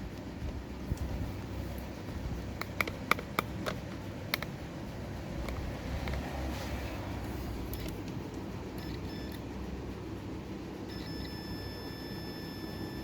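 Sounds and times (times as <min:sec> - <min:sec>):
low steady rumble: 0:00.0 - 0:13.0
multimeter beeps: 0:08.8 - 0:09.5, 0:10.8 - 0:13.0.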